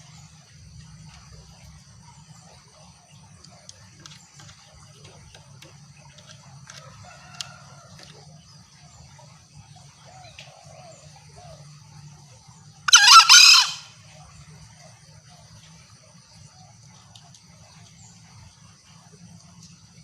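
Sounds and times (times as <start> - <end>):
insects droning: 0.0 - 20.0
junglefowl crowing: 6.7 - 8.2, 12.9 - 14.0.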